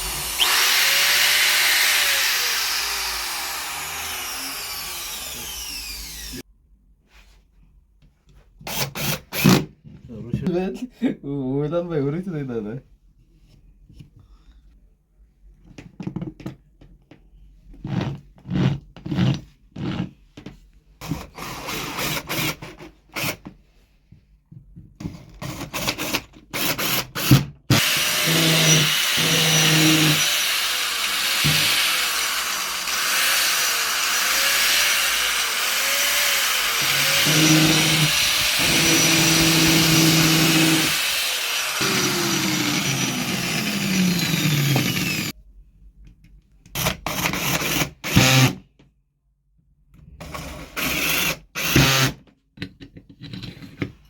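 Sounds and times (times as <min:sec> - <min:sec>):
angle grinder motor: 0:00.0 - 0:06.4, 0:27.7 - 0:45.3.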